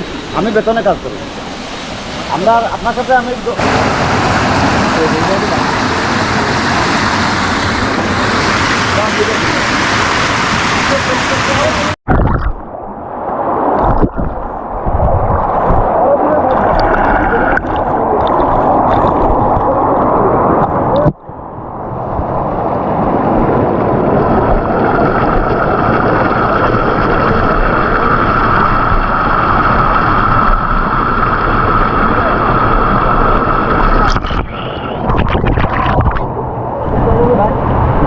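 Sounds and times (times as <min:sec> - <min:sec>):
waterfall pouring: 0:02.3 - 0:12.7.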